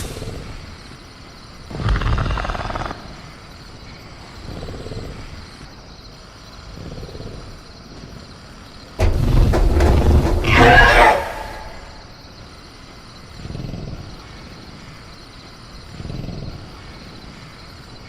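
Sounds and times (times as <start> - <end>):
crickets chirring: 0.0 - 18.0
creature growling: 1.7 - 3.3.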